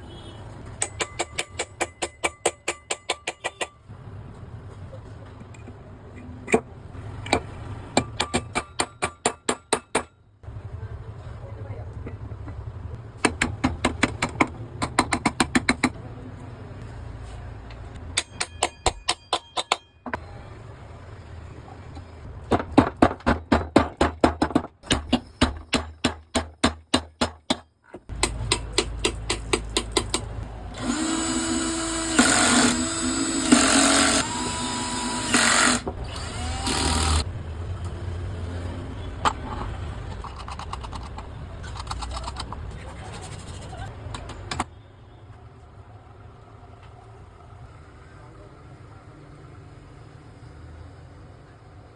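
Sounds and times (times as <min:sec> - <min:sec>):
sharp metallic tool taps: 0:00.8 - 0:03.8, 0:18.2 - 0:20.0.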